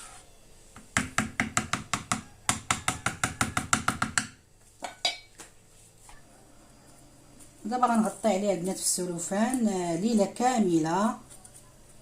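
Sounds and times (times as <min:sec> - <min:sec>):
spoon knocking against a bowl: 0:01.0 - 0:05.3.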